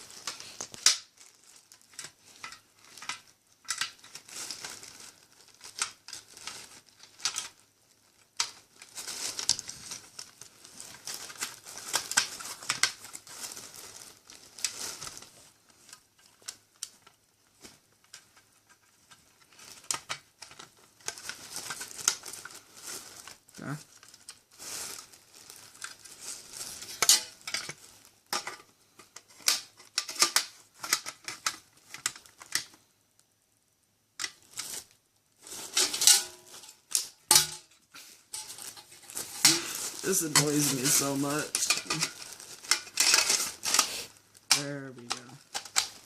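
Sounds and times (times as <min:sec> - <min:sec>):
plastic parts clicking and knocking: 0:01.8 - 0:04.3, 0:05.6 - 0:07.6, 0:08.2 - 0:10.3, 0:10.9 - 0:13.2, 0:16.2 - 0:22.5, 0:26.9 - 0:32.8, 0:34.2 - 0:34.7, 0:35.7 - 0:43.9, 0:44.5 - 0:46.0
rustling scrapes: 0:21.1 - 0:28.7, 0:34.4 - 0:44.2.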